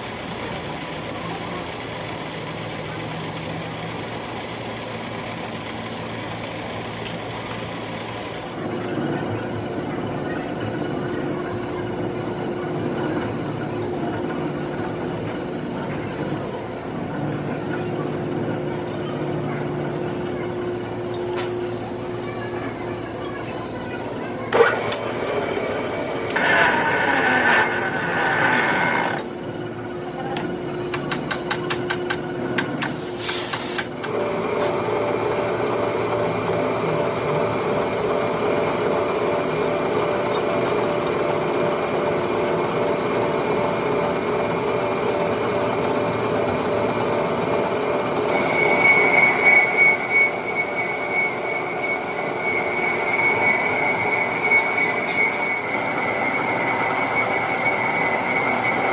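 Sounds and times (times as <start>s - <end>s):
lathe tool squealing: 24.6s - 29.3s, 48.0s - 58.9s
short hiss: 32.9s - 33.8s.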